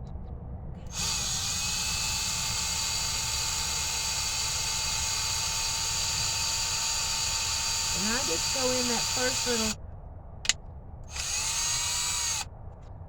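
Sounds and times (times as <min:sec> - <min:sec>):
electric drill whining: 0:00.9 - 0:09.8, 0:11.1 - 0:12.5.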